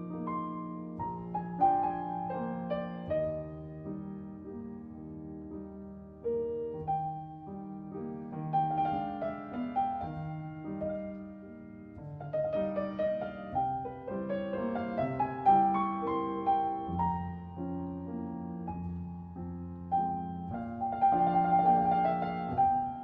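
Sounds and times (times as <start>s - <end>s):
soft solo piano: 0.0s - 23.0s.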